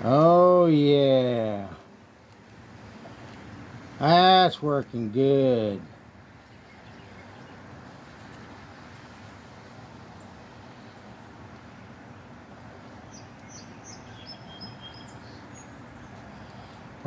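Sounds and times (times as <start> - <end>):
distant traffic: 0.0 - 17.0
faint bird chirps: 13.0 - 16.8.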